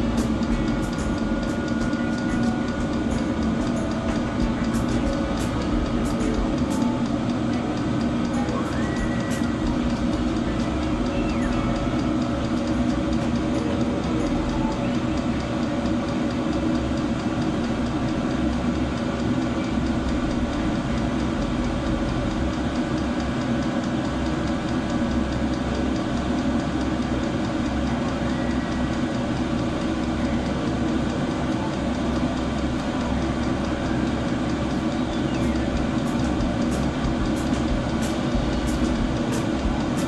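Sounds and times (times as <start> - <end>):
air heater hum and blowing air: 0.0 - 40.0.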